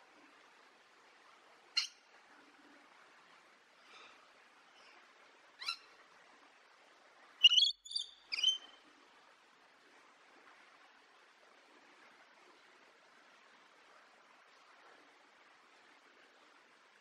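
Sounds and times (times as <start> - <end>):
faint steady hiss: 0.0 - 17.0
bird chirping: 7.4 - 8.8.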